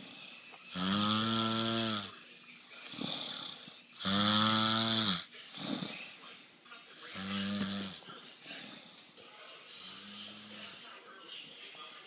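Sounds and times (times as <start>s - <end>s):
man snoring: 0.0s - 2.2s, 2.8s - 6.1s, 7.1s - 8.0s, 9.8s - 10.7s.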